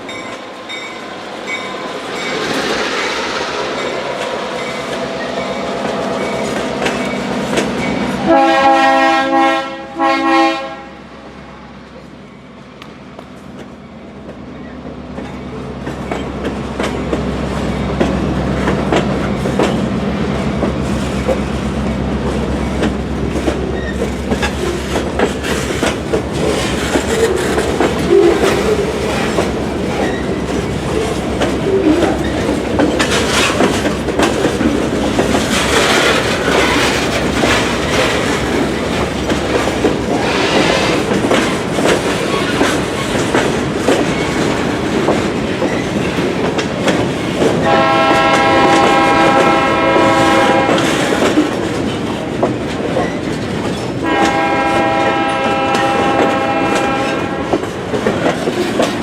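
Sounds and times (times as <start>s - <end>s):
train wheels clattering over rail joints: 15.2s - 59.0s
locomotive engine hum: 22.1s - 41.8s.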